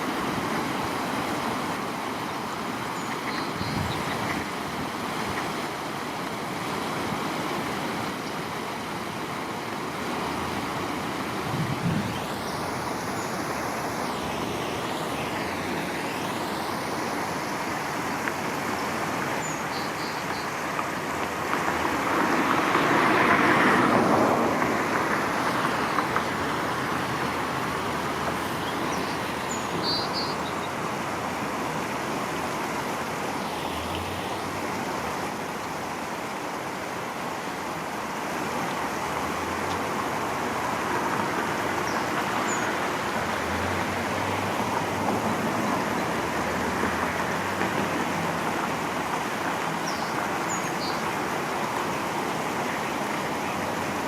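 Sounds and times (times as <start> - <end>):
distant road traffic: 0.0 - 54.0.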